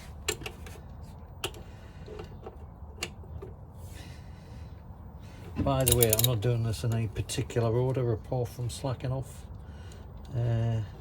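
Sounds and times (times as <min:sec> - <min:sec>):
metal hand tools clicking: 0:05.8 - 0:06.4.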